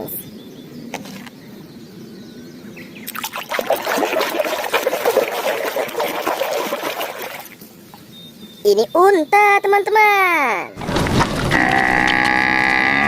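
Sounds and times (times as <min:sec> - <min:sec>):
water running and splattering: 0:03.1 - 0:07.6.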